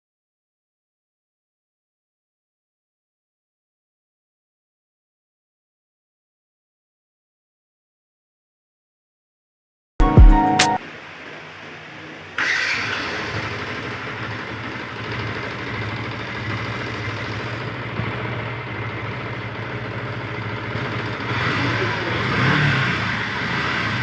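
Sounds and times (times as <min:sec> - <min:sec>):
motorcycle engine idling: 0:10.9 - 0:24.0.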